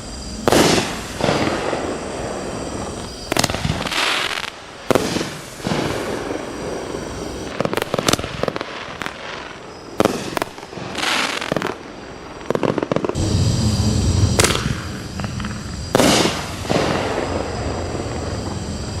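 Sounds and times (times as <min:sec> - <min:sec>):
crackling firework trails: 0:00.0 - 0:19.0
low rumble: 0:13.2 - 0:16.9.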